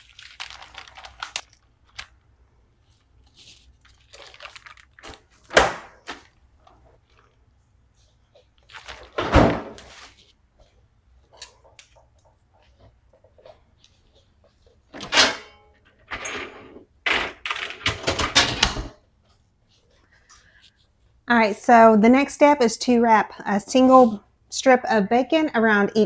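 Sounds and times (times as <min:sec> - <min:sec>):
plastic packaging crinkling: 0:00.0 - 0:07.4, 0:08.6 - 0:09.2.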